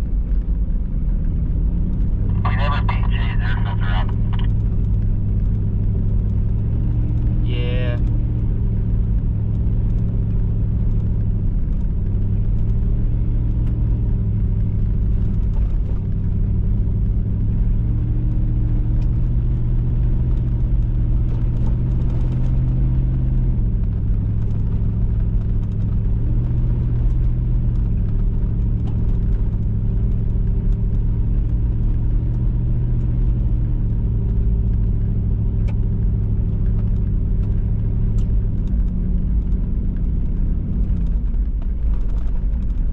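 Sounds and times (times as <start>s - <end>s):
vehicle engine running: 0.0s - 42.9s.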